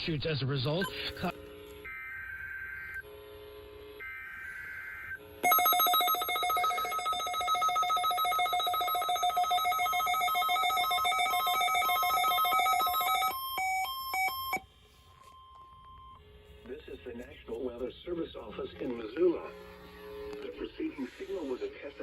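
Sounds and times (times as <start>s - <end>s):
pulsing electronic alarm tone: 0.8s - 16.2s.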